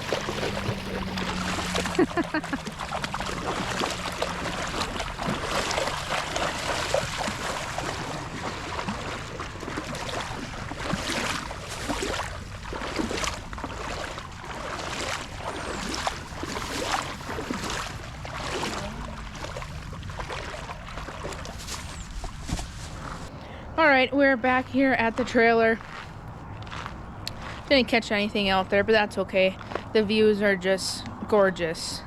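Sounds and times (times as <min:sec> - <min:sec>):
footsteps sloshing in creek water: 0:00.0 - 0:23.3.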